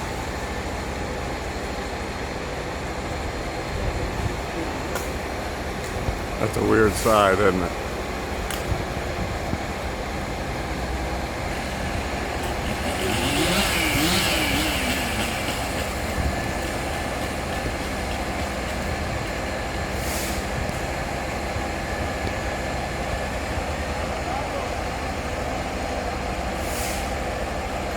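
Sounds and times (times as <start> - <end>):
truck engine running: 0.0 - 27.9
hiss: 20.0 - 20.6, 26.6 - 27.3.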